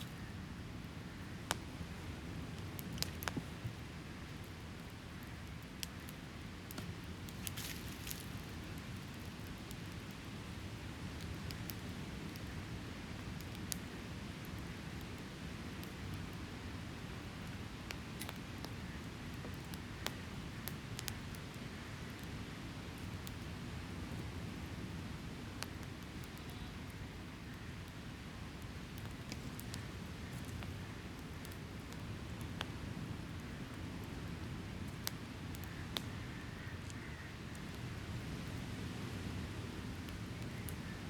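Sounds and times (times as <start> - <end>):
campfire crackling: 0.0 - 41.0
sharp pops of burning wood: 1.3 - 3.8.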